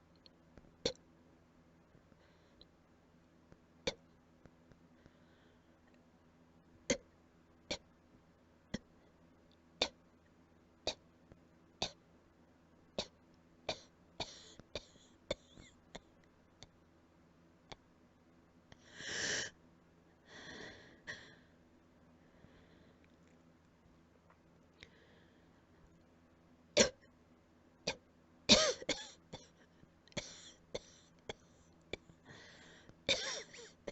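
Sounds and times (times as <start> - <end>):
person coughing: 27.9 - 29.6, 30.2 - 31.1, 33.1 - 33.9.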